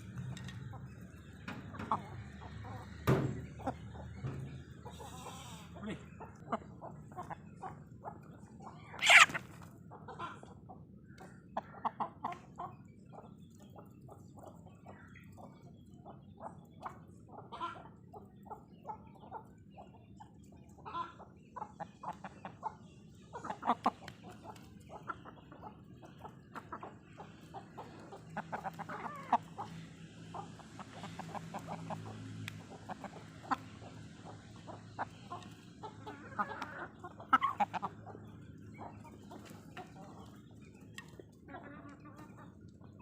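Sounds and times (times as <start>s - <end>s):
chickens clucking: 0.0s - 43.0s.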